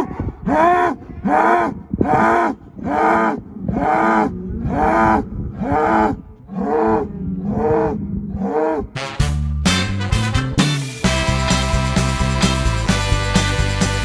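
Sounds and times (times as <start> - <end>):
cattle bawling: 0.0 - 9.0.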